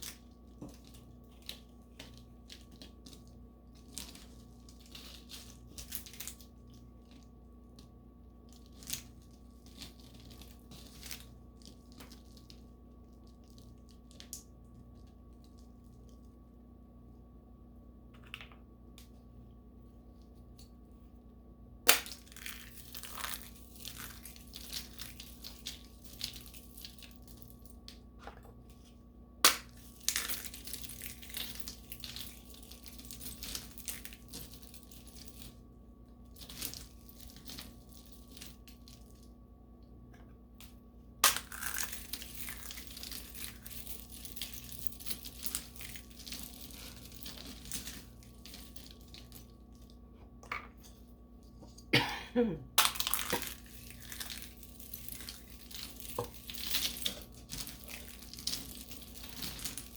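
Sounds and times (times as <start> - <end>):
gritty crumbling and crackling: 0.0 - 16.5, 21.8 - 39.4, 40.2 - 51.8, 52.7 - 59.9.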